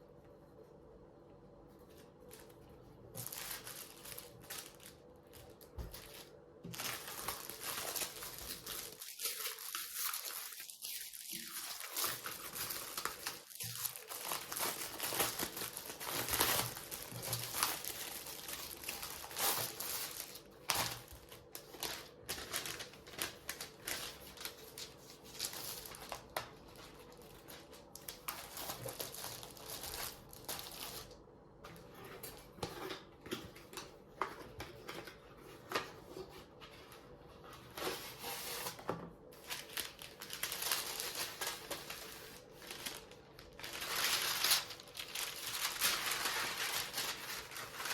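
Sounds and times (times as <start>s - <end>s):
plastic and paper crinkling: 1.7s - 47.9s
packaging tearing: 3.2s - 31.1s, 39.4s - 47.9s.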